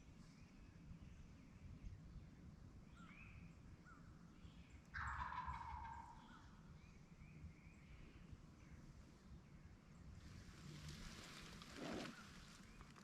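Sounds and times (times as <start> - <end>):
songbird chirps: 0.0 - 13.0
turkey gobbling: 5.0 - 6.2.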